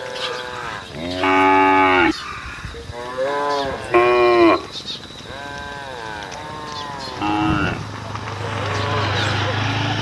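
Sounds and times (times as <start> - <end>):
cattle mooing: 0.0 - 2.2, 5.3 - 7.9, 8.6 - 10.0.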